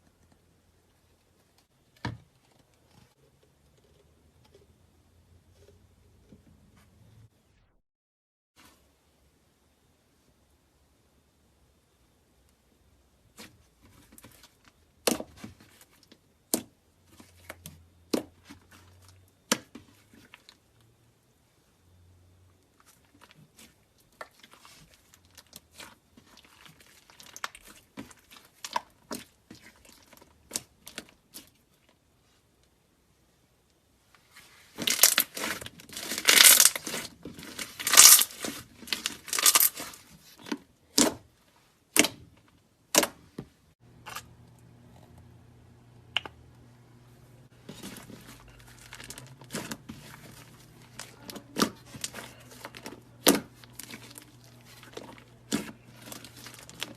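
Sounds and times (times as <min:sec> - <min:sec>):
tearing crackling sounds: 0:34.8 - 0:40.1
low steady hum: 0:43.8 - 0:56.9.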